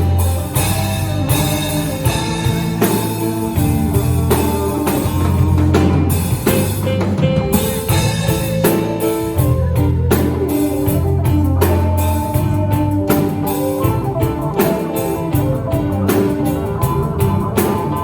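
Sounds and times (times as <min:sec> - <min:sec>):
drum kit beat: 0:00.0 - 0:18.0
live rock band playing: 0:00.0 - 0:18.0.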